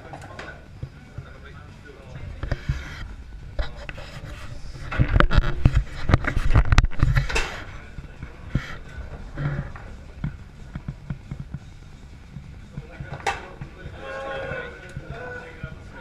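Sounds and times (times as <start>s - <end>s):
foosball ball and rods clacking: 4.9s - 7.7s, 13.1s - 13.6s.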